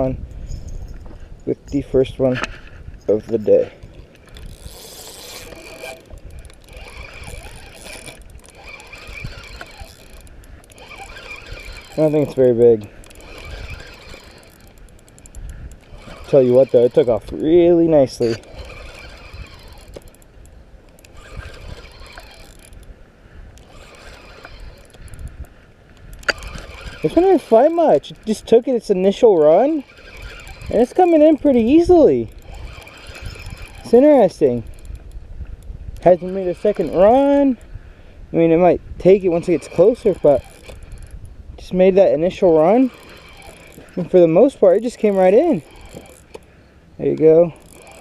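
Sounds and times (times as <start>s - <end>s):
fishing reel ratcheting buzz: 3.5s - 23.0s, 23.6s - 37.8s, 38.4s - 48.0s.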